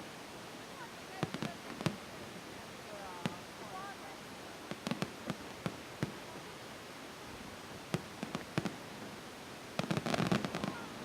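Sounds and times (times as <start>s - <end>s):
firework crackling pops: 1.1s - 2.2s, 3.1s - 3.8s, 4.6s - 6.4s, 7.9s - 8.9s, 9.8s - 11.0s
firework bangs: 1.2s - 2.0s, 4.7s - 6.2s, 7.9s - 8.8s, 9.8s - 11.0s.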